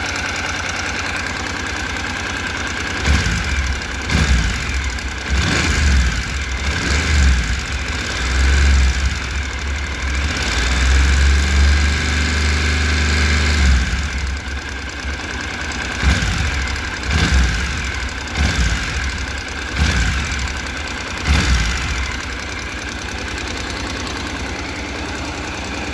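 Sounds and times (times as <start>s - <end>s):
motorcycle engine idling and revving: 0.0s - 25.9s.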